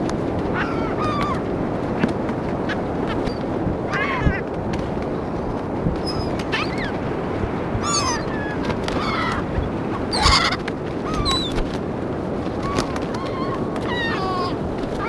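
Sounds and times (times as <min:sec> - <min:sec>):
steady rushing noise: 0:00.0 - 0:15.0
gulls squawking: 0:00.5 - 0:01.5, 0:03.9 - 0:04.5, 0:07.8 - 0:11.6, 0:12.6 - 0:15.0.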